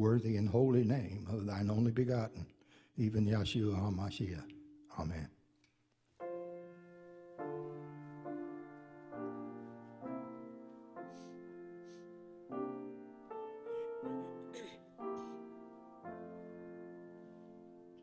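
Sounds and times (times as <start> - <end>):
piano chords ringing: 0.0 - 2.3, 6.2 - 18.0.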